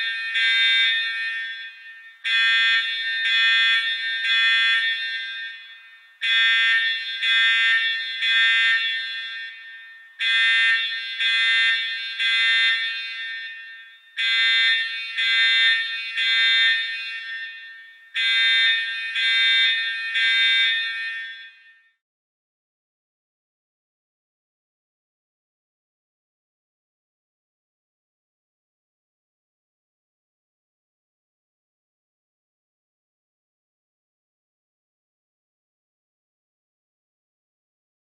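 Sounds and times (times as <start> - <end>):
alarm buzzer beeping: 0.0 - 21.6.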